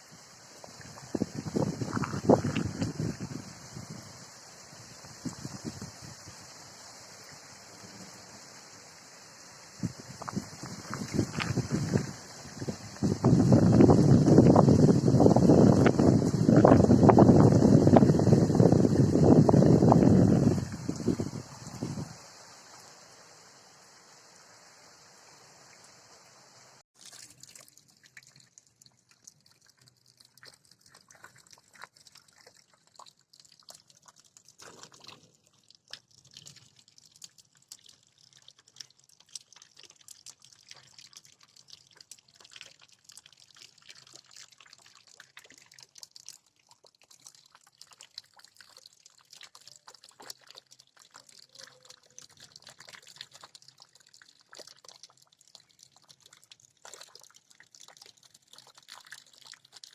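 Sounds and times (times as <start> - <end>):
faint rain hiss: 0.0 - 26.8
raindrops dripping: 0.0 - 59.9.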